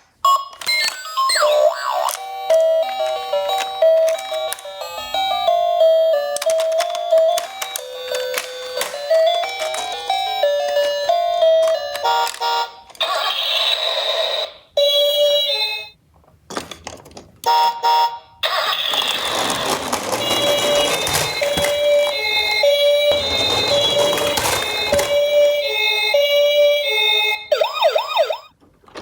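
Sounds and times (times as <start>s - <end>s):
electronic ambulance siren: 0.5s - 4.4s, 20.1s - 28.5s
toy cars rattling down a slope: 6.4s - 10.9s, 18.5s - 25.2s.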